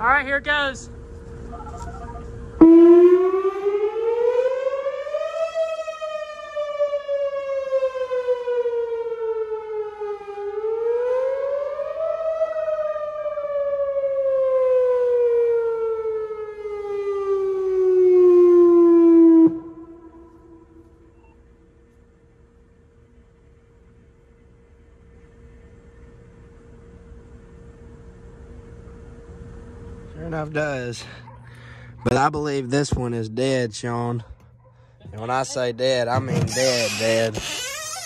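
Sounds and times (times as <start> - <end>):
warning siren wailing: 0.0 - 21.9.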